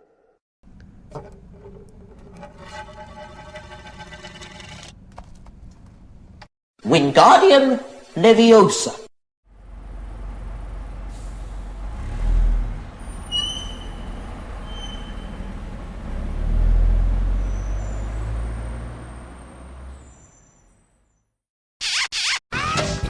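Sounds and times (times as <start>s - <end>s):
bus engine rumble: 9.5s - 20.7s
brake squeals: 9.6s - 22.4s.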